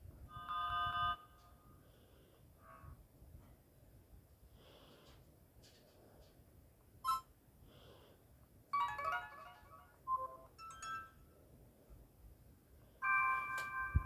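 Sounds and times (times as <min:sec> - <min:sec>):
chime notes: 0:08.8 - 0:11.2, 0:13.0 - 0:14.0
held chord of steady tones: 0:13.0 - 0:14.0.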